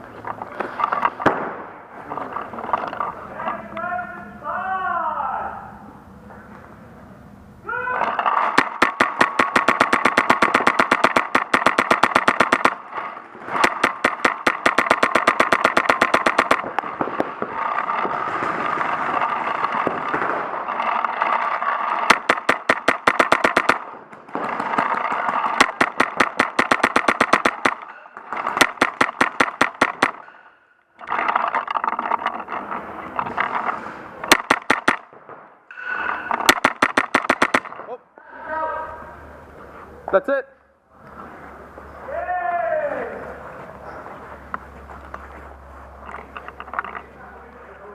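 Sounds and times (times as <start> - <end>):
steady pitched whine: 5.4 - 47.9
paintball marker firing: 8.2 - 30.5, 34.2 - 35.5, 36.3 - 37.9.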